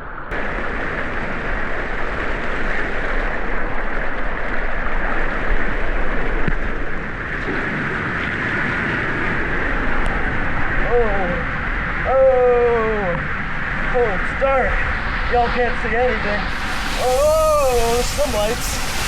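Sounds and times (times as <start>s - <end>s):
water rushing down waterslide: 0.3s - 10.7s, 16.5s - 19.0s.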